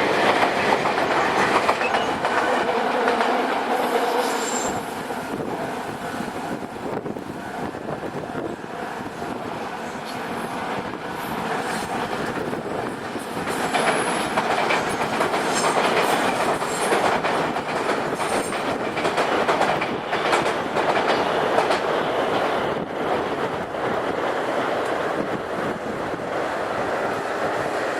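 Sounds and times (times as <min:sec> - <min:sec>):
train wheels clacking: 0:00.0 - 0:04.9, 0:11.2 - 0:22.8
high wheel squeal: 0:04.2 - 0:04.8.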